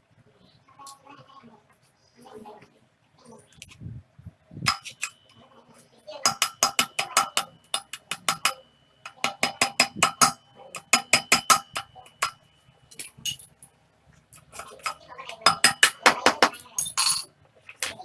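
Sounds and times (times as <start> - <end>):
hammer blows on metal: 4.6 - 5.2, 6.3 - 12.5, 14.4 - 16.6.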